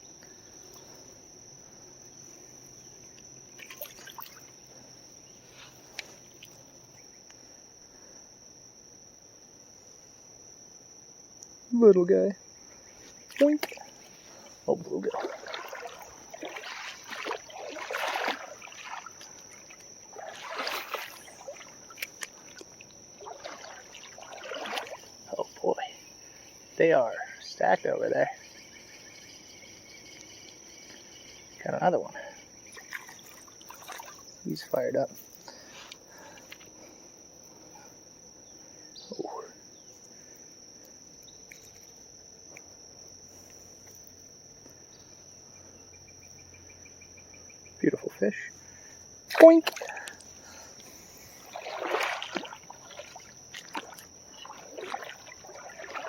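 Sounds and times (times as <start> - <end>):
high insect drone: 0.0 - 56.0
creek water splashing: 3.5 - 4.6, 13.2 - 25.5, 32.6 - 34.8, 49.3 - 56.0
faint ticks: 5.6 - 6.6.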